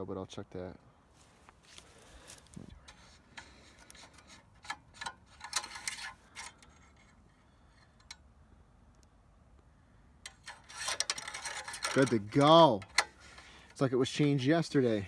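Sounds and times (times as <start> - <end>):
dipstick clicks and scrapes: 2.5 - 8.2, 10.2 - 13.8.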